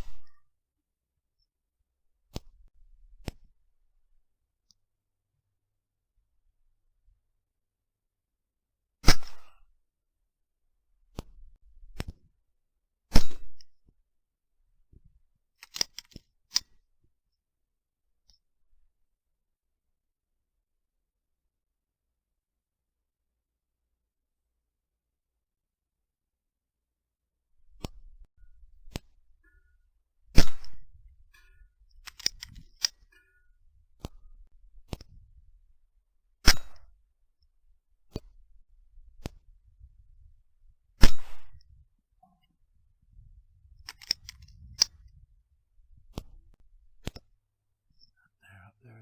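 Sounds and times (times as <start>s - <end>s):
rifle shot: 9.0s - 9.6s, 13.1s - 13.6s, 30.4s - 30.8s, 41.0s - 41.6s
sharp clicks: 31.9s - 33.0s, 43.8s - 45.1s
rifle shots: 41.0s - 41.5s.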